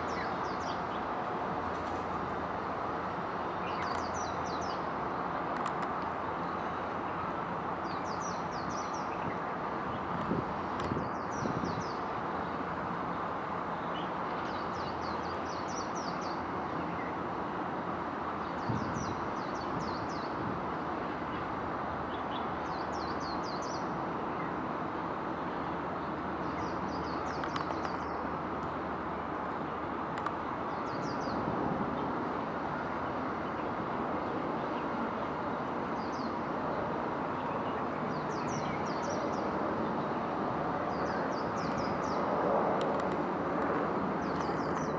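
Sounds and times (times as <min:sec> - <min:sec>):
songbird singing: 0:37.4 - 0:40.3, 0:40.9 - 0:43.3, 0:44.1 - 0:44.9.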